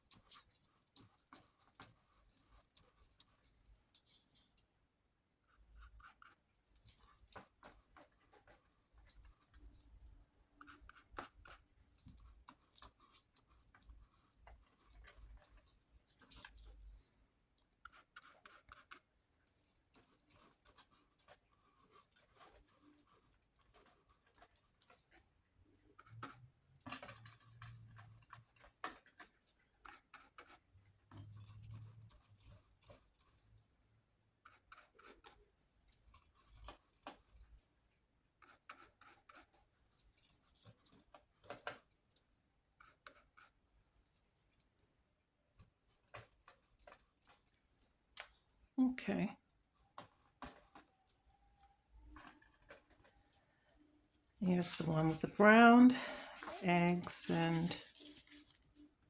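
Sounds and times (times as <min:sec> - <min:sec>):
paintbrush scratching on paper: 0:00.0 - 0:04.7, 0:05.4 - 0:10.0, 0:10.6 - 0:16.8, 0:17.7 - 0:25.1, 0:25.8 - 0:33.5, 0:34.4 - 0:37.5, 0:38.4 - 0:41.9, 0:42.8 - 0:43.7, 0:54.4 - 0:59.0.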